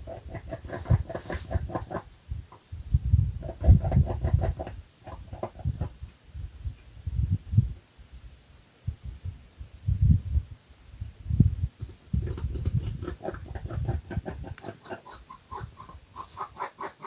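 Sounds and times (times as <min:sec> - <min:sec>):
animal squeaky calls: 0:14.6 - 0:17.0.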